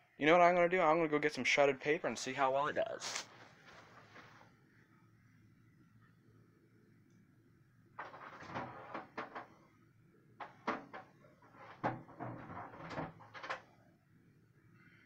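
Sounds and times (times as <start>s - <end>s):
objects being handled: 8.0s - 9.6s, 10.4s - 13.7s.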